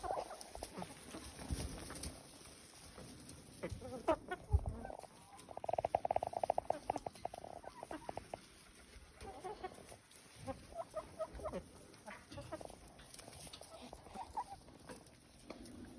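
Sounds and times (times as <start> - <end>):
chickens clucking: 0.0 - 15.9.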